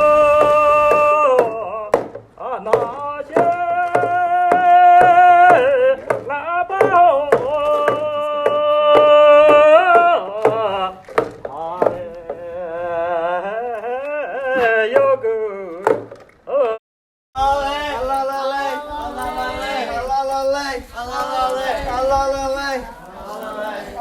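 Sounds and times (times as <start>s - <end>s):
person singing long held notes: 0.0s - 2.0s
percussive beat: 0.1s - 12.4s.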